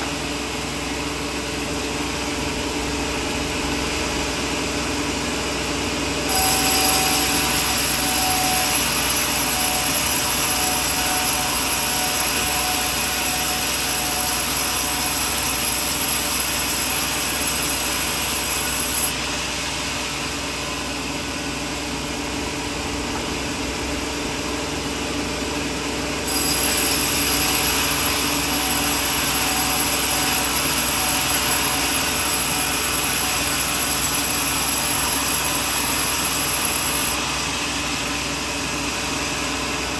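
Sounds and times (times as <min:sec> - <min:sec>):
sawmill running: 0:00.0 - 0:39.9
saw blade cutting wood: 0:06.3 - 0:19.2, 0:26.3 - 0:37.2.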